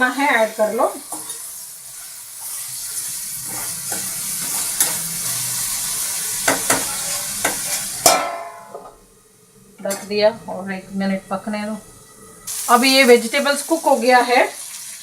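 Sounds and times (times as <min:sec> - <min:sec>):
vegetables sizzling in oil: 0:00.0 - 0:15.0
spoon knocking against pan: 0:06.4 - 0:08.9.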